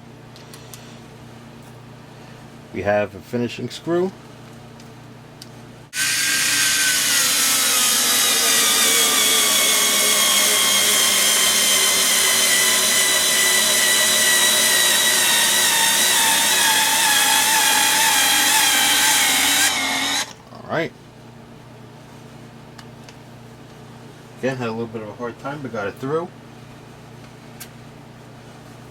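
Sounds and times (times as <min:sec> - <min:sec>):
electric screwdriver motor whining: 0:06.0 - 0:20.4.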